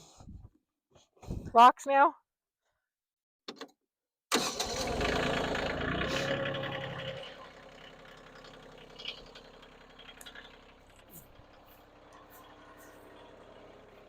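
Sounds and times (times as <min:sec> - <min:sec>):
tractor diesel engine running: 0:04.3 - 0:14.0.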